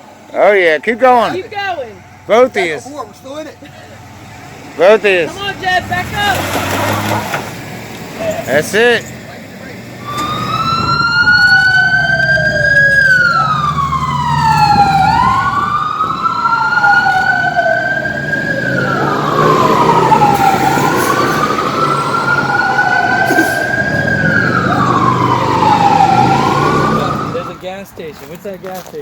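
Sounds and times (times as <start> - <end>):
emergency vehicle siren wailing: 0.0 - 2.8, 8.4 - 27.7
low engine rumble: 7.2 - 28.1.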